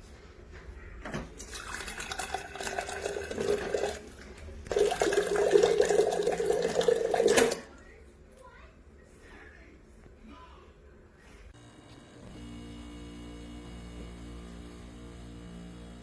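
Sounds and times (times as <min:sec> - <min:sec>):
water running into a container: 0:01.4 - 0:07.7.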